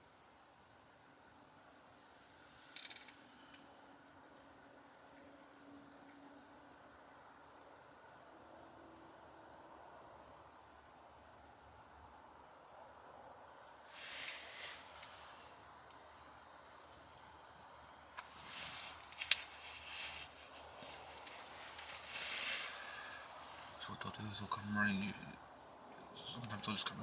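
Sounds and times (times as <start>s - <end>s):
rustling: 13.9s - 15.7s, 18.2s - 23.8s.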